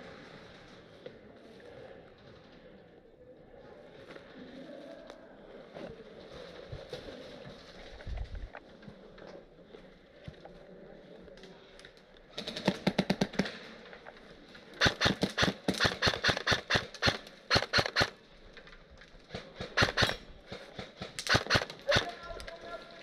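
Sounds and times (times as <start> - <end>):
airsoft guns firing bursts: 12.4 - 13.6, 14.8 - 18.2, 19.3 - 22.5.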